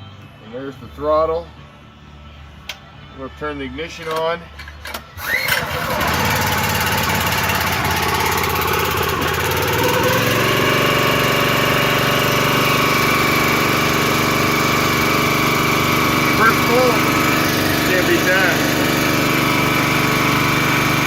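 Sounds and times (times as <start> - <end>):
log splitter engine running: 4.6 - 21.0.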